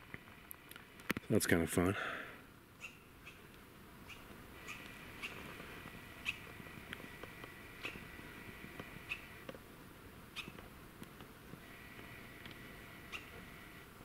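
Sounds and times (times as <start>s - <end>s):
small animal chirps: 4.1s - 5.4s, 13.1s - 13.3s.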